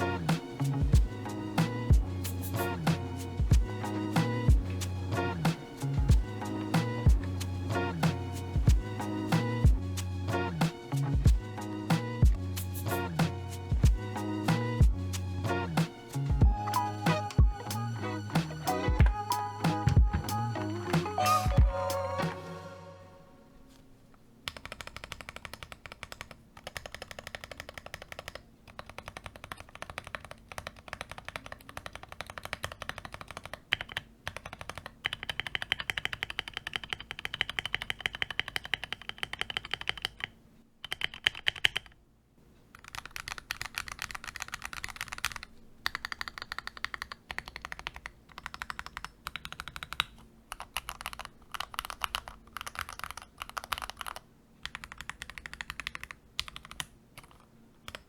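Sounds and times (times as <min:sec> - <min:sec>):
fast keyboard typing: 0:24.5 - 0:42.0, 0:42.7 - 0:58.0.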